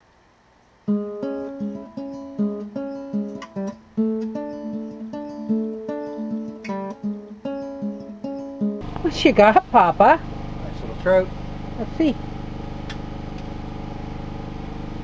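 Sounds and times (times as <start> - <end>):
plucked acoustic guitar melody: 0.8 - 12.1.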